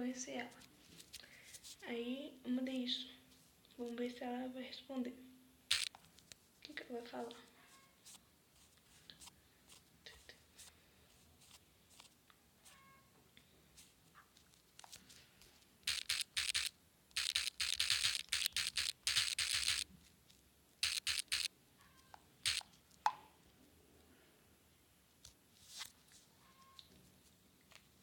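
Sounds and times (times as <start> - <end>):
scratchy rustling: 5.7 - 6.4, 7.6 - 12.9, 13.7 - 20.1, 20.8 - 21.5.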